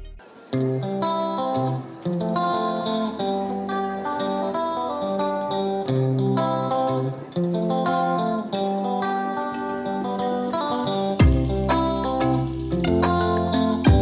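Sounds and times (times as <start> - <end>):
bass line: 0.0 - 0.2, 11.2 - 14.0
plucked guitar music: 0.0 - 14.0.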